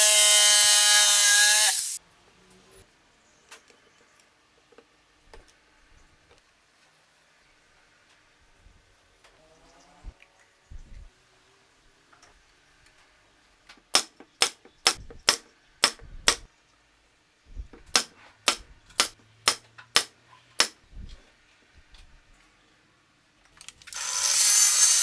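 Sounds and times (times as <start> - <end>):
hammering nails into wood: 13.9 - 16.5, 17.9 - 20.8.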